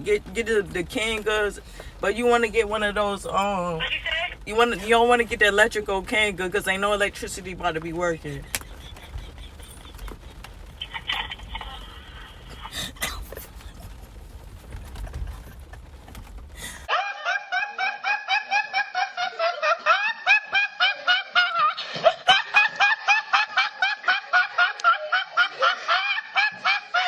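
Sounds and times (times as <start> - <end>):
high-pitched rapid laughter: 10.8 - 12.7, 16.9 - 27.0.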